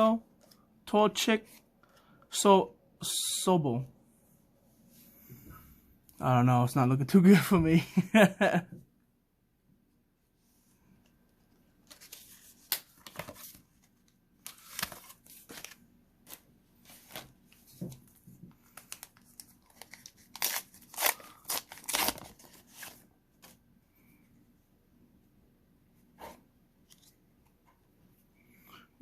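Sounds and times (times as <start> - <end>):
wrappers tearing and crinkling: 18.9 - 22.8.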